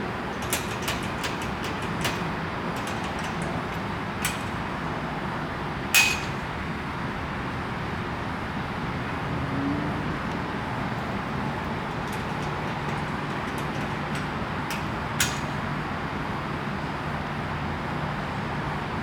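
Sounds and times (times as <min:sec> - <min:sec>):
sharp ringing clink: 0:06.0 - 0:06.6.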